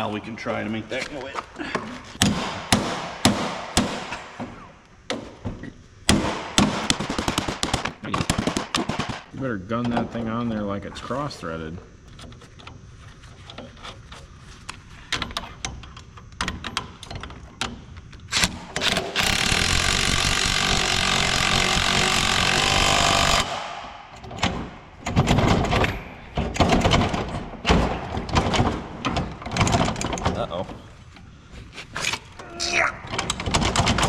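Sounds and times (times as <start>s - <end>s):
impact wrench driving nut: 18.3s - 26.0s
tools clicking and knocking: 24.1s - 30.4s, 33.1s - 34.0s
knocks and clatter: 24.1s - 30.8s, 33.1s - 34.0s.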